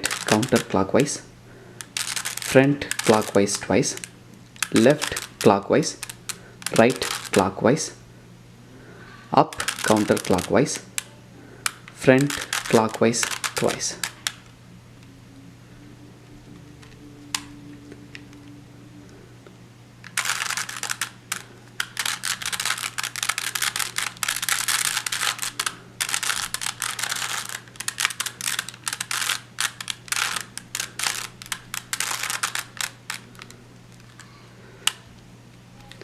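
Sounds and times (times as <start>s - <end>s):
puzzle cube clicking turns: 0.0s - 0.8s, 1.8s - 7.4s, 9.5s - 14.4s, 20.0s - 34.2s
low steady hum: 0.0s - 36.0s.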